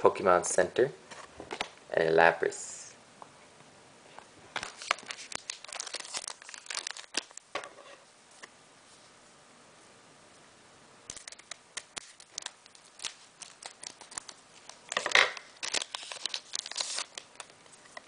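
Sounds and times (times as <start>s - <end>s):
card pack clicks and rustles: 4.6s - 7.5s, 11.1s - 18.0s
foil wrapper crinkling and tearing: 4.6s - 7.5s, 11.1s - 18.0s.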